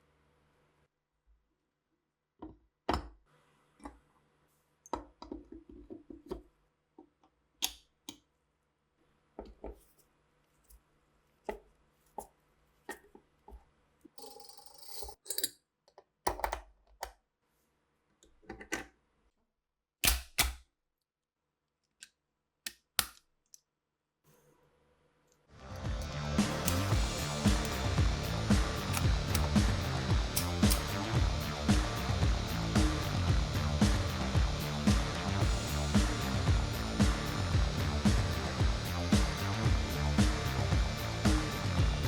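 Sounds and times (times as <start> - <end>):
rifle parts clicking and knocking: 20.0 - 20.6.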